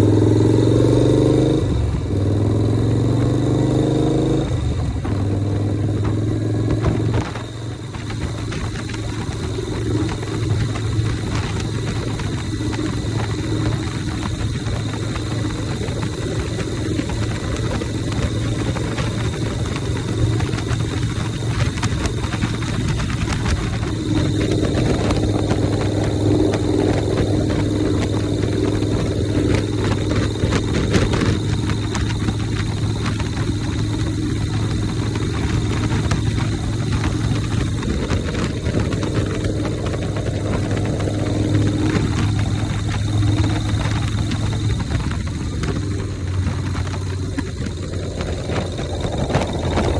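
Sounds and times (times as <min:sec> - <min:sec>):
motorcycle engine running: 0:00.0 - 0:49.9
rushing noise: 0:35.7 - 0:49.9.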